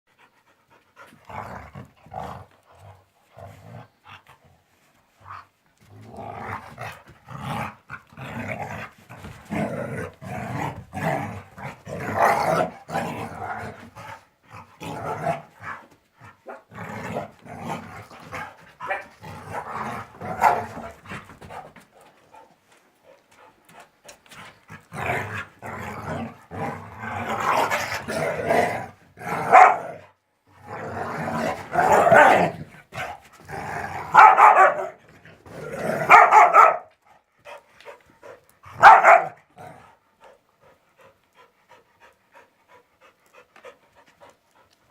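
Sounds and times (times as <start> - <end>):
dogs growling: 1.0 - 4.5, 5.2 - 21.8, 23.1 - 36.5
dog barking: 20.4 - 20.6, 29.5 - 29.9, 34.1 - 35.0, 36.1 - 36.9, 38.8 - 39.4.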